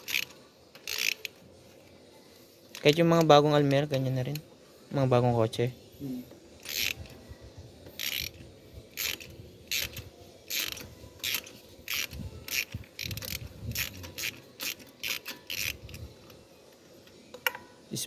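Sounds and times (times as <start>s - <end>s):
ratchet wrench clicking: 0.0s - 1.4s, 6.6s - 7.2s, 7.9s - 16.4s.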